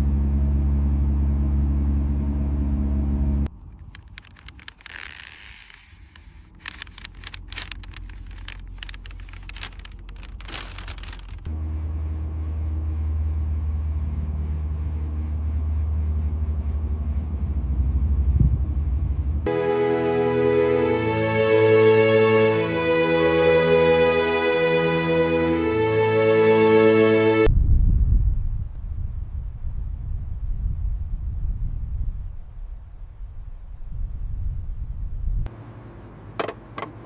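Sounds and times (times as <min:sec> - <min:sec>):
low machine drone: 0:00.0 - 0:04.2, 0:06.7 - 0:36.4
scraping and crackling: 0:03.6 - 0:11.5.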